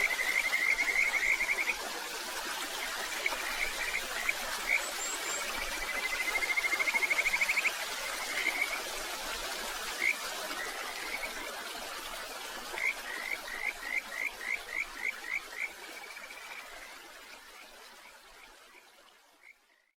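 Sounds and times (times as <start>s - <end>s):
stream water running: 0.0s - 19.9s.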